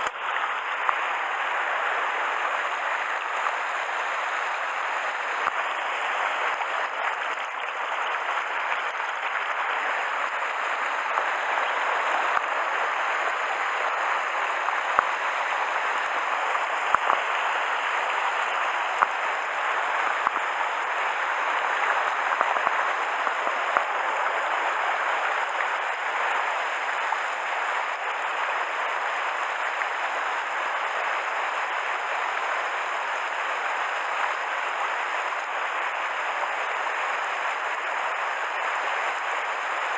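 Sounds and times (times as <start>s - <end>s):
faint sharp clicks: 0.0s - 1.1s, 5.4s - 5.7s, 16.0s - 25.7s
stream rushing over rocks: 0.0s - 39.9s.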